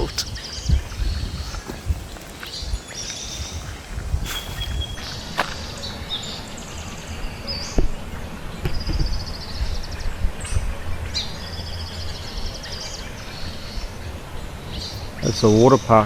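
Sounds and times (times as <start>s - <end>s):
birds trilling: 0.0s - 7.8s.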